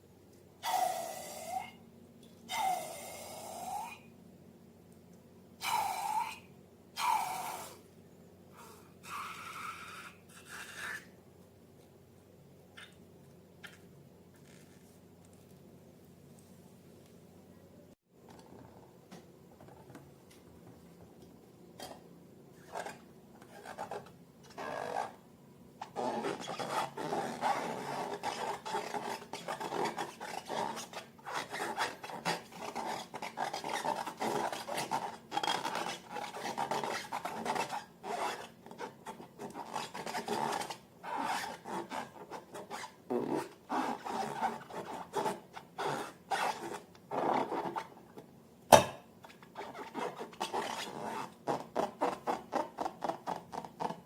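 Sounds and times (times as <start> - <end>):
sharp loud snap: 48.7 - 49.1.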